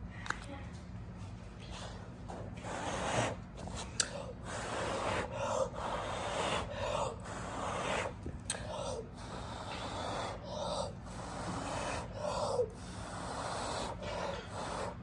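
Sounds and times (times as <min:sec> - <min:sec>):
steady low hum: 0:00.0 - 0:15.0
person blowing breathy puffs: 0:01.7 - 0:15.0
person breathing in: 0:04.0 - 0:15.0.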